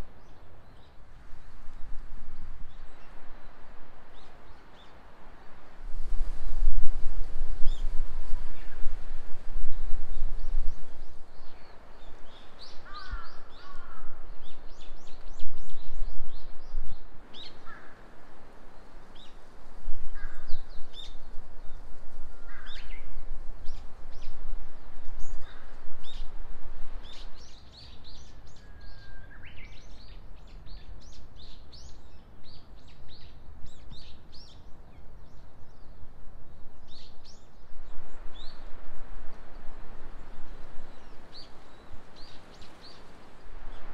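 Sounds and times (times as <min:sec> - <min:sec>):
gusty wind rumble: 0:05.1 - 0:28.6.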